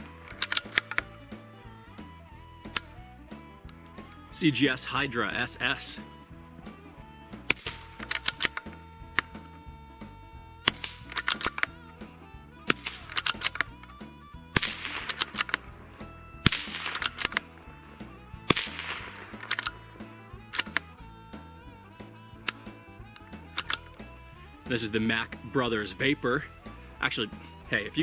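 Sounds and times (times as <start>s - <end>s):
suppressed pistol shots: 7.5s - 9.4s, 10.6s - 11.7s, 12.7s - 13.9s, 14.5s - 17.8s, 18.4s - 19.8s.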